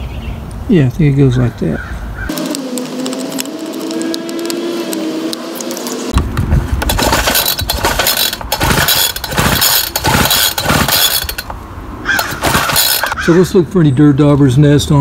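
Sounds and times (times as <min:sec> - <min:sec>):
recoil starter cord pulled: 0:02.3 - 0:05.9, 0:06.8 - 0:13.2
engine turning over: 0:02.3 - 0:13.2.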